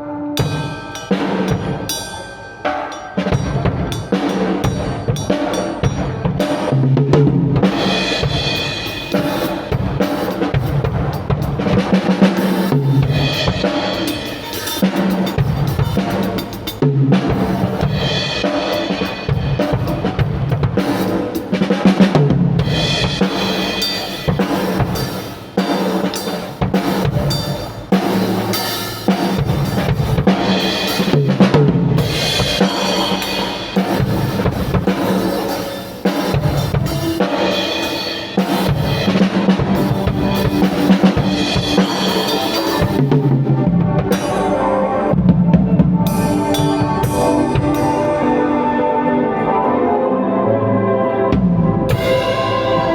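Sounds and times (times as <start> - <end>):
drum kit playing: 0.0 - 49.4, 51.3 - 52.9
held pitched instrument notes: 32.0 - 52.9.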